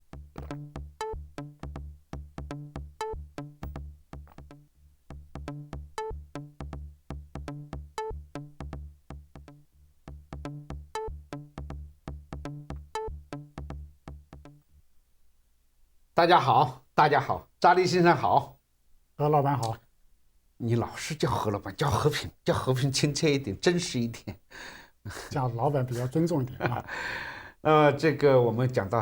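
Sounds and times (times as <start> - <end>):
steady bass beat: 0.0 - 14.6.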